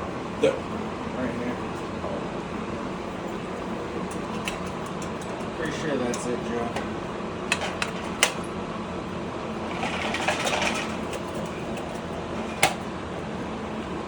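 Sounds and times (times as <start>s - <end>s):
steady background hum: 0.0s - 14.0s.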